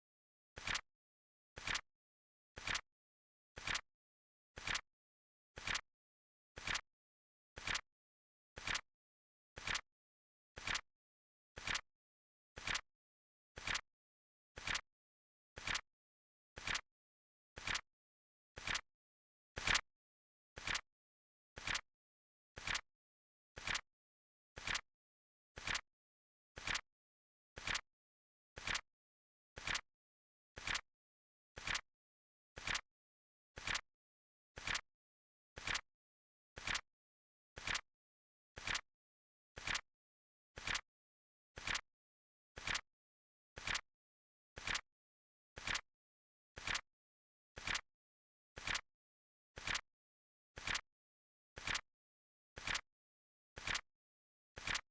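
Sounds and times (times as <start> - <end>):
flip-clock timer clicking: 31.6 - 31.8, 35.6 - 35.8, 36.6 - 36.8, 39.6 - 39.8, 40.6 - 40.8, 41.6 - 41.8, 42.6 - 42.8, 44.6 - 44.8, 45.6 - 45.8, 46.6 - 46.8, 47.6 - 47.8, 48.6 - 48.8, 49.6 - 49.8, 50.6 - 50.8, 51.6 - 51.8, 52.6 - 52.8, 53.6 - 53.8, 54.6 - 54.9.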